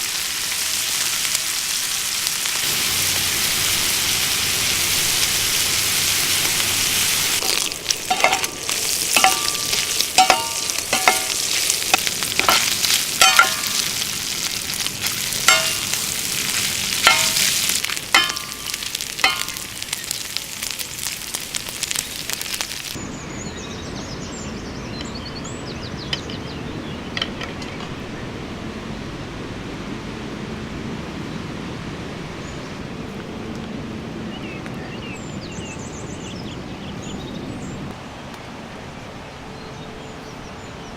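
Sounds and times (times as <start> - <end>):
steaks sizzling over fire: 0.0 - 23.0
utensil clinking on cookware: 7.4 - 14.0, 15.4 - 16.1, 17.0 - 19.9.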